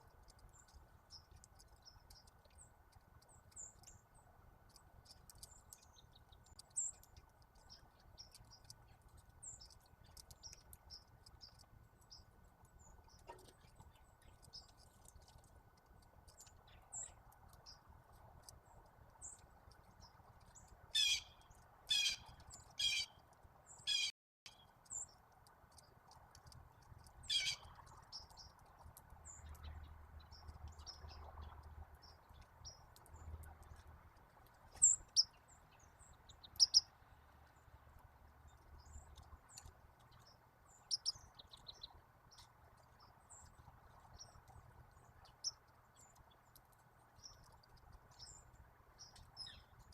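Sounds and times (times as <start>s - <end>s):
high chirping bird notes: 27.3s - 27.7s.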